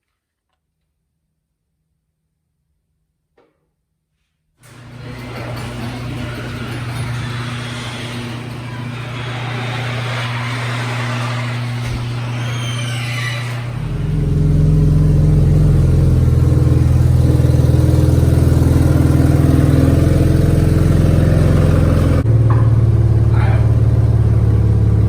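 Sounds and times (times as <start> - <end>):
car engine through exhaust: 13.6 - 25.0.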